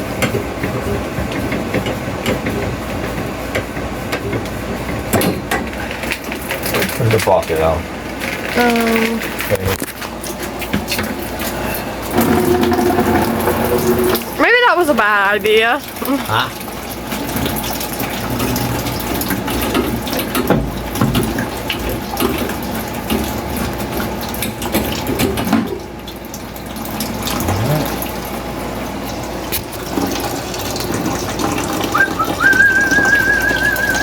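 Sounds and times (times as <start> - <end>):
water pouring into a bucket: 15.8 - 28.4, 29.2 - 34.0
high wavering whistle: 31.9 - 34.0.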